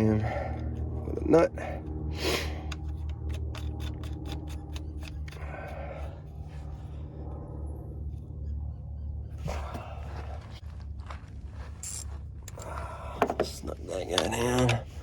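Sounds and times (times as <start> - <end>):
steady low hum: 0.0 - 15.0
ratchet wrench clicking: 2.7 - 5.4.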